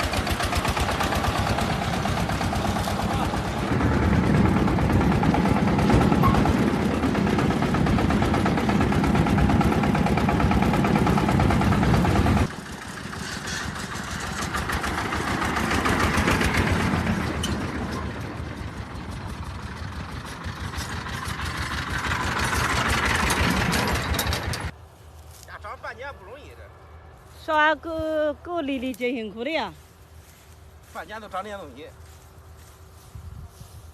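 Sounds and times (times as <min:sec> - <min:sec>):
farm vehicle engine running: 0:00.0 - 0:24.8
quieter engine sound: 0:00.0 - 0:33.9.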